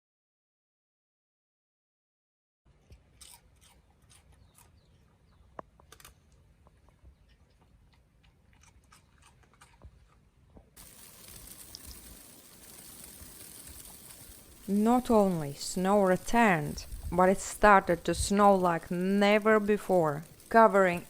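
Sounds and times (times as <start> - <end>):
snow crunching: 10.8 - 21.0
steady hiss: 10.8 - 21.0.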